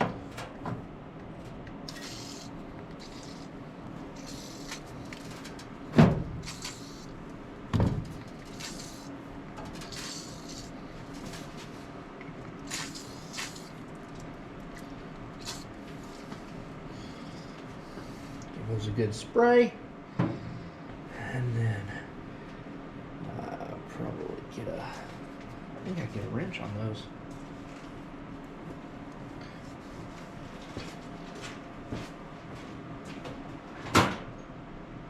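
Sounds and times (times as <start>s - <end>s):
short hissing bursts: 1.9s - 3.5s.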